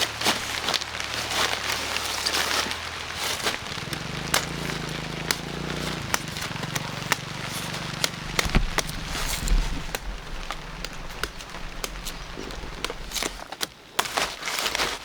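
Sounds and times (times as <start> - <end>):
rustling and crackling: 0.2 - 15.0
sharp snaps: 3.4 - 13.5
faint low hum: 3.6 - 13.4.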